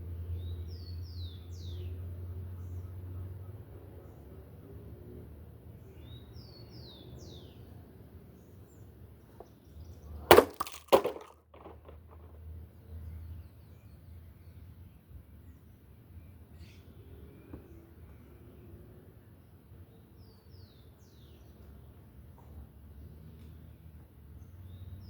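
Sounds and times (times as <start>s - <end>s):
fan crashing on ground: 10.2s - 12.3s
broken parts clattering: 10.2s - 12.4s.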